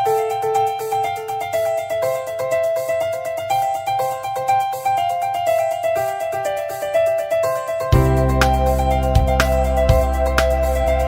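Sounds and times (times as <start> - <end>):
piano-like keyboard melody: 0.0 - 11.0
steady beat: 0.0 - 11.0.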